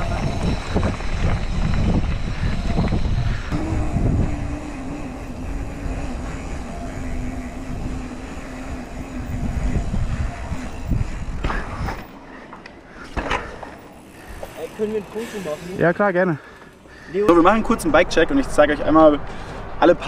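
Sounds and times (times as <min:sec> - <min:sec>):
wind over microphone: 0:00.0 - 0:12.2
bike tyres rolling: 0:00.0 - 0:19.5
steady hum: 0:00.8 - 0:12.2
bike clicks and knocks: 0:11.3 - 0:15.2.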